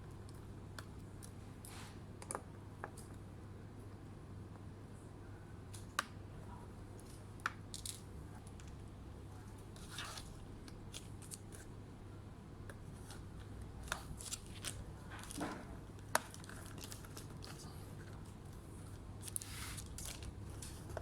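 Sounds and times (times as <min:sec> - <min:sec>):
light rustling or scraping: 0:19.2 - 0:21.0.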